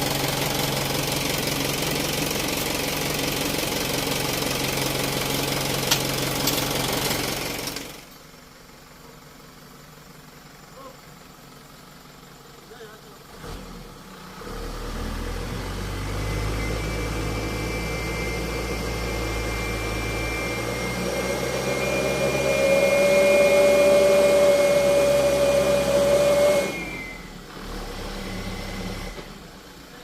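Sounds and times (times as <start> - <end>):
truck engine revving under load: 13.3 - 29.5
steady whine: 16.2 - 27.5.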